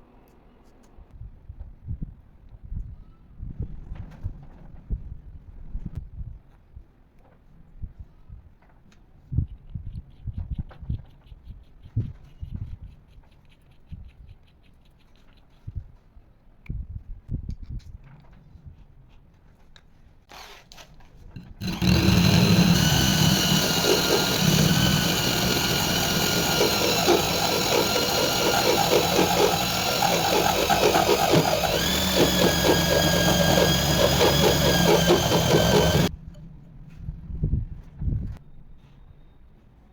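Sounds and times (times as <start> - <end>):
power tool whining and rattling: 21.4 - 36.1.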